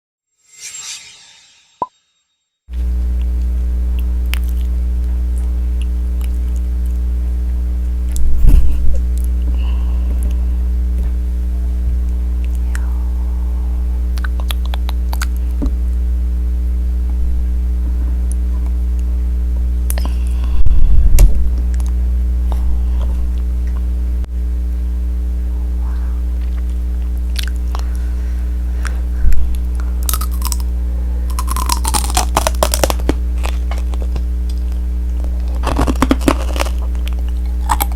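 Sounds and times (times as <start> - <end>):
low electrical hum: 2.7 - 37.9
crackly chewing: 4.0 - 5.2, 5.8 - 7.0, 29.8 - 30.7, 31.3 - 37.9
candy shell crunching: 30.0 - 30.7, 31.3 - 37.9.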